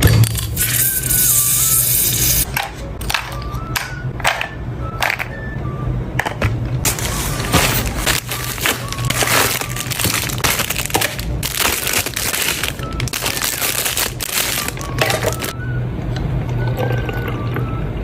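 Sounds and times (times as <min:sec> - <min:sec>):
packaging crackling and crinkling: 0:06.8 - 0:15.5.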